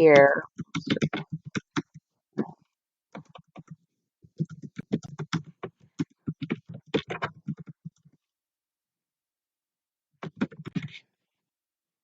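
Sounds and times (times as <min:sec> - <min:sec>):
keyboard typing: 0:00.0 - 0:08.1, 0:10.2 - 0:10.9.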